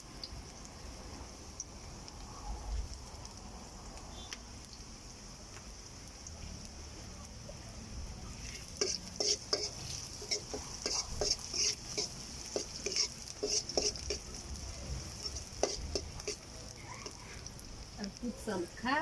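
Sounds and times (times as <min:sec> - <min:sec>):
food sizzling in oil: 0:00.0 - 0:19.0
spoon scraping and knocking pot: 0:08.8 - 0:14.3, 0:15.2 - 0:16.4.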